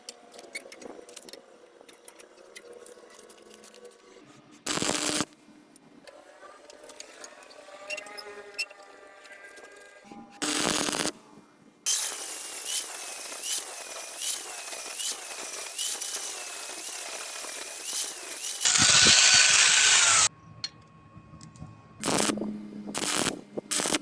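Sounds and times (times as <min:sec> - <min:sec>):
power tool working metal: 0:11.9 - 0:20.3.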